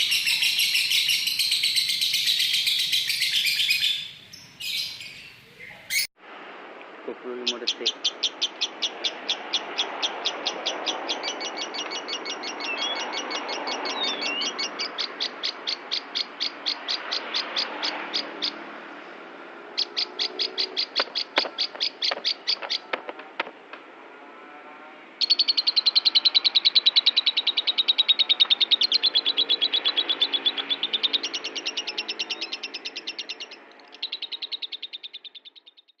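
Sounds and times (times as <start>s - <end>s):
lovebird rapid high chattering: 0.0s - 6.1s, 19.8s - 23.0s, 25.2s - 35.9s.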